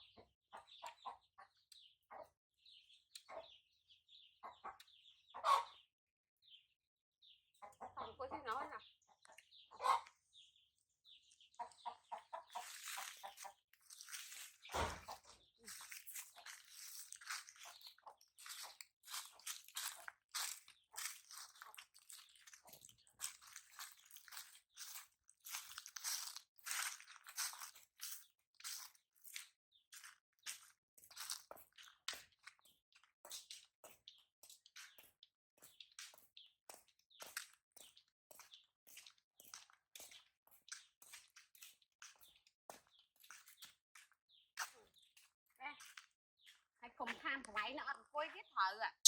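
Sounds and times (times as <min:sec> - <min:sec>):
chicken clucking: 0:00.0 - 0:02.3, 0:03.1 - 0:05.9, 0:07.6 - 0:10.2, 0:11.4 - 0:13.6
chicks peeping: 0:00.0 - 0:06.6, 0:07.2 - 0:31.6
crunchy chewing: 0:11.6 - 0:46.7.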